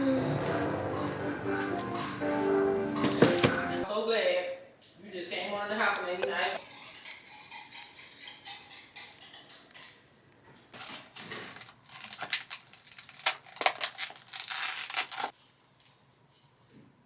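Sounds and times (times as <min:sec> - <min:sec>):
plastic packaging crinkling and tearing: 0:10.8 - 0:15.4.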